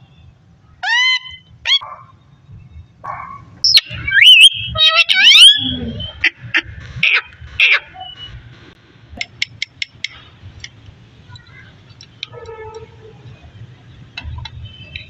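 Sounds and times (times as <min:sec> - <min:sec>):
parakeet calling: 0:00.8 - 0:01.8, 0:03.6 - 0:08.3.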